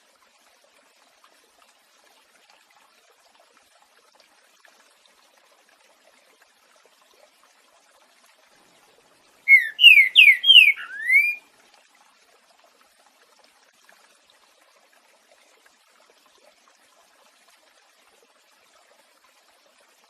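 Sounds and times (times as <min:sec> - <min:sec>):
bird singing whistled phrase: 0:09.5 - 0:11.4.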